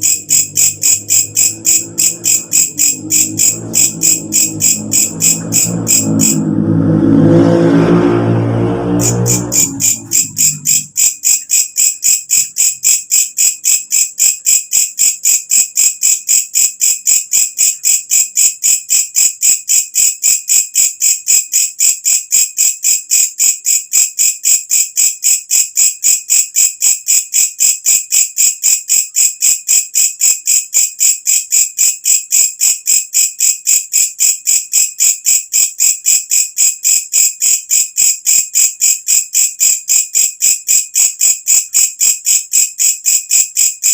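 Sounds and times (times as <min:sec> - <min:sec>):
katydid shrill chirps: 0:00.0 - 0:06.4, 0:09.0 - 0:14.6.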